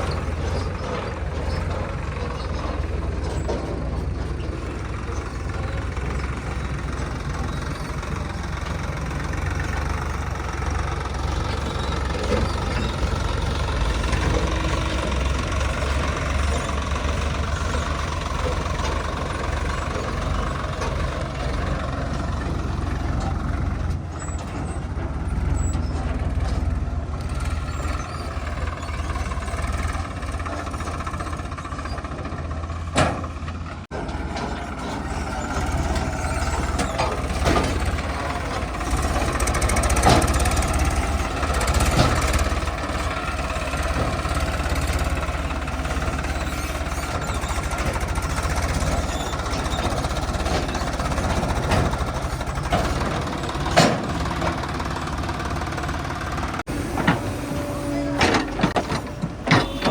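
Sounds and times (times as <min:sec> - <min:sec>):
heavy diesel engine rumbling: 0:00.0 - 0:59.9.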